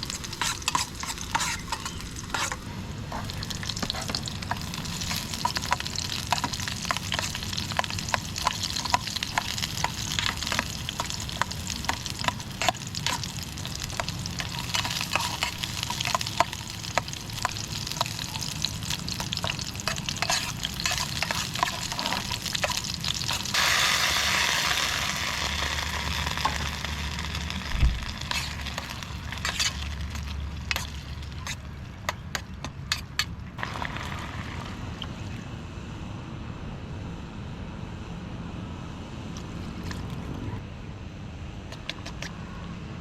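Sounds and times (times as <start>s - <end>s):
sizzling hiss: 0.0s - 31.6s
sharp crackles and pops: 0.0s - 32.8s.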